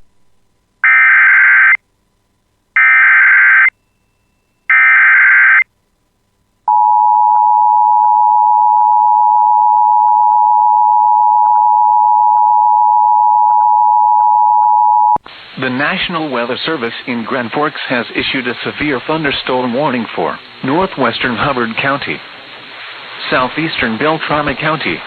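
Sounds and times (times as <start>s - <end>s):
data burst tones: 2.8s - 3.7s, 4.7s - 5.6s.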